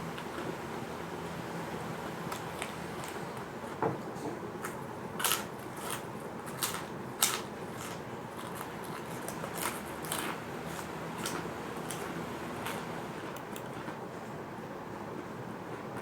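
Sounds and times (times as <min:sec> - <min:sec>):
crackers crunching while chewed: 0:04.6 - 0:14.0.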